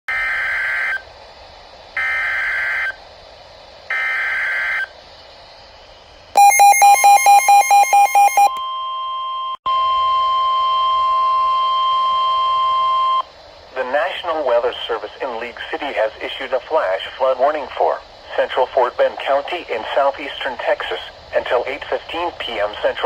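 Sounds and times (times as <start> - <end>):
steady warning alarm tone: 2.0 - 3.0, 3.9 - 4.9, 6.4 - 13.3
rapid beeping: 6.4 - 8.6.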